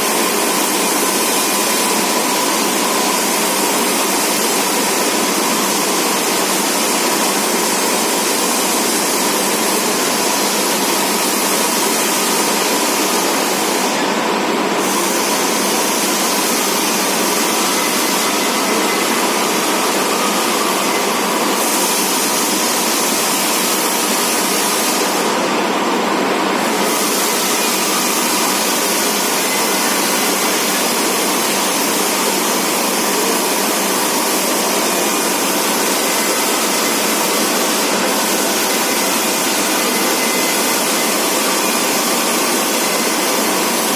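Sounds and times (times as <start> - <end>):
lathe running: 0.0 - 43.9.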